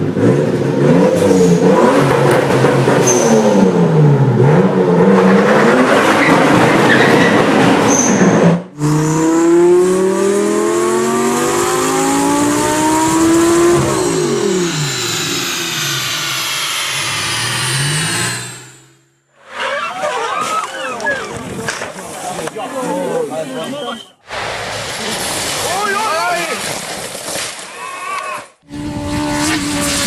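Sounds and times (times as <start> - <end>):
turbocharged car engine revving: 0.0 - 7.8, 8.6 - 19.3, 28.7 - 30.0
high whine: 12.1 - 19.3.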